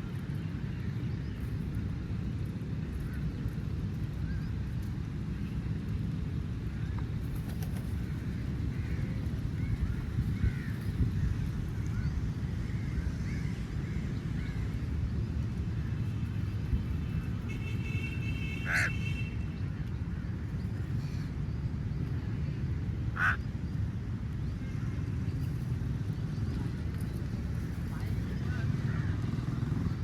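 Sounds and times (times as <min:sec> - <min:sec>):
steady low rumble: 0:00.0 - 0:17.5
crow cawing: 0:10.4 - 0:10.8, 0:18.6 - 0:19.0, 0:23.2 - 0:23.4.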